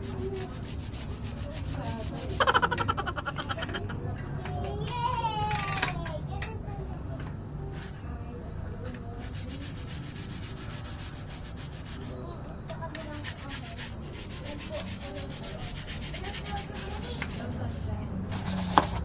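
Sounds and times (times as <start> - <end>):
scratchy scrubbing strokes: 0.0 - 4.0, 13.0 - 17.8.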